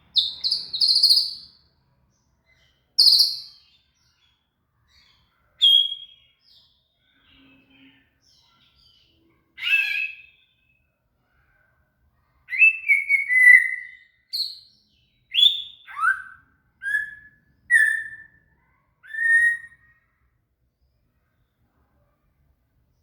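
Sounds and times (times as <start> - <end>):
bird singing whistled phrases: 0.2 - 1.5, 3.0 - 3.6, 5.6 - 6.3, 9.6 - 10.5, 12.5 - 14.7, 15.3 - 18.4, 19.0 - 19.9.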